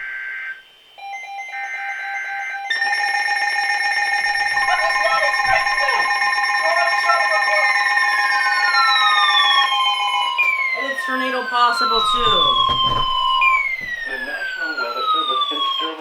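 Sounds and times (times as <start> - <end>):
shrill alert tones: 2.7 - 16.0
digital data chirps: 4.0 - 16.0.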